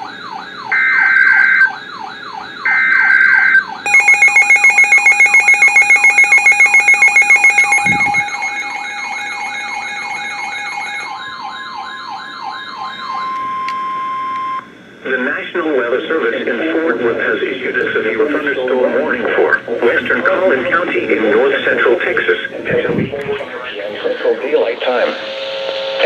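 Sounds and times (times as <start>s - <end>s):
siren wailing: 0.0s - 14.6s
screeching data bursts: 3.9s - 11.1s
rapidly pulsing alert tone: 3.9s - 11.2s.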